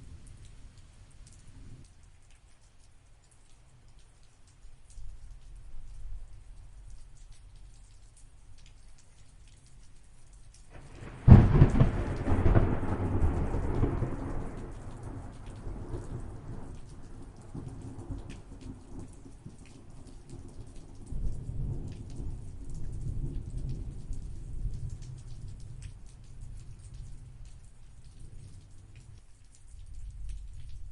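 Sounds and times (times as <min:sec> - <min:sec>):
rain patter: 0:00.0 - 0:30.9
thunder rumbling: 0:10.7 - 0:19.6.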